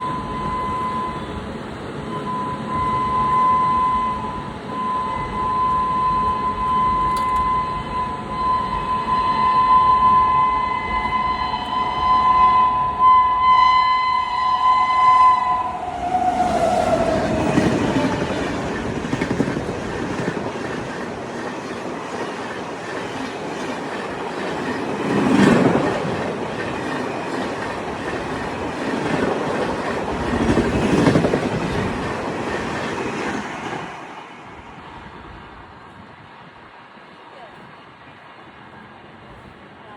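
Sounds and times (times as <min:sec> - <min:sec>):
train coaches rumbling and clattering: 0:00.0 - 0:13.0, 0:14.3 - 0:39.9
locomotive horn: 0:02.1 - 0:18.8.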